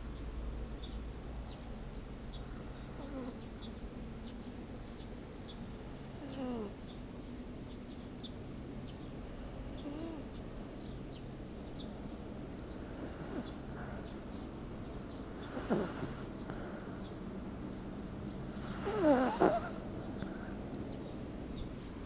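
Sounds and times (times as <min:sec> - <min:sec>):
dog snoring softly: 0:02.4 - 0:03.6, 0:05.7 - 0:06.8, 0:09.2 - 0:10.5, 0:12.6 - 0:14.1, 0:15.3 - 0:16.8, 0:18.5 - 0:20.6.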